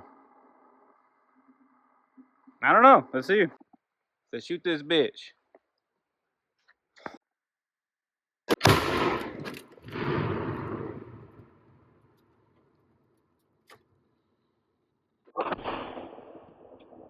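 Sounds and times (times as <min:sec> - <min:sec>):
rifle shot: 0:08.5 - 0:11.9, 0:15.4 - 0:17.0
explosion with echoing rumble: 0:08.6 - 0:12.1, 0:15.4 - 0:17.0.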